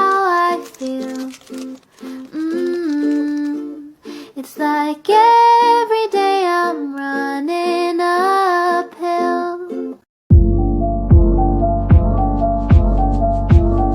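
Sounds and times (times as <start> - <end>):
high voice singing: 0.0 - 9.9.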